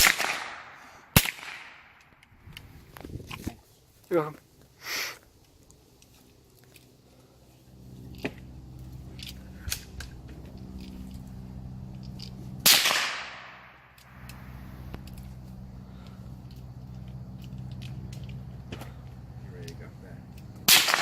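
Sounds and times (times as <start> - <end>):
rifle shot echoing: 0.0 - 2.0, 12.6 - 14.3, 20.6 - 21.0
steady low hum: 0.0 - 21.0.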